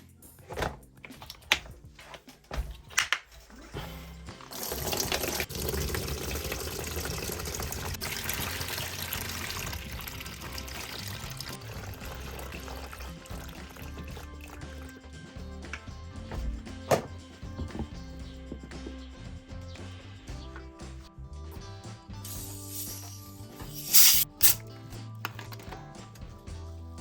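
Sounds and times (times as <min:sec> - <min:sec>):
background music: 0:00.0 - 0:27.0
objects clicking and knocking: 0:00.4 - 0:03.6
liquid pouring: 0:04.4 - 0:14.9.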